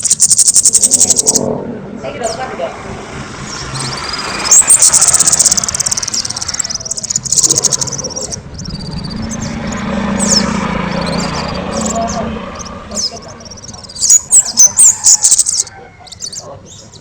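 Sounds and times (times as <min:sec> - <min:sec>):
songbird singing chirping trills: 0:00.0 - 0:17.0.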